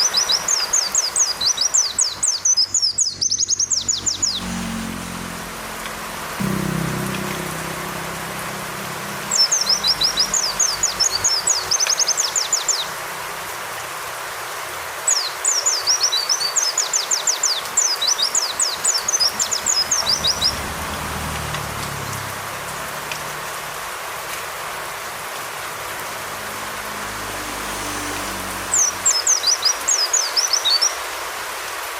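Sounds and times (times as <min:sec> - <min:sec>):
bird chirping rapidly: 0:00.0 - 0:04.8, 0:09.1 - 0:12.9, 0:15.1 - 0:20.6
steady rain hiss: 0:10.5 - 0:19.7, 0:20.5 - 0:28.4, 0:29.7 - 0:31.9.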